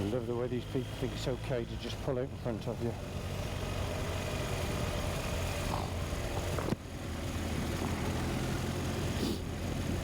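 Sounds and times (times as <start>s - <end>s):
road and wind noise: 0.0s - 10.0s
motorcycle engine running: 2.3s - 10.0s.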